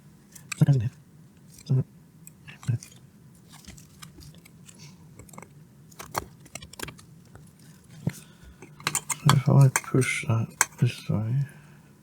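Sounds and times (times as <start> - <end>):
hand tool clicking on metal and plastic: 1.4 - 10.9.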